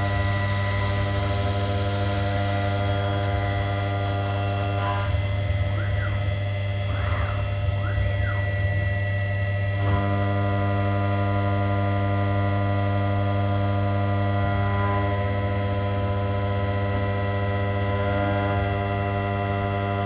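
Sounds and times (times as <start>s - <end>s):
milling machine electrical hum: 0.0s - 20.0s
motors whining in pitch: 0.0s - 20.0s.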